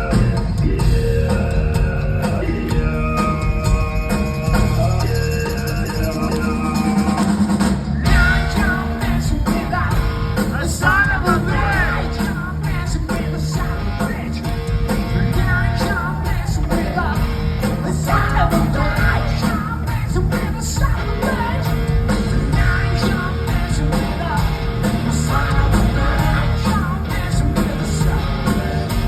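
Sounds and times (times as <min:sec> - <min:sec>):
live rock band playing: 0:00.0 - 0:29.0
person singing: 0:15.2 - 0:29.0.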